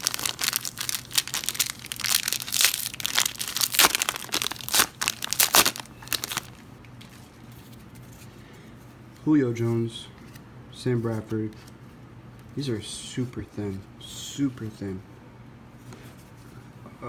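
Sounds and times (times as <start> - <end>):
plastic wrapper tearing and crinkling: 0.0 - 6.6.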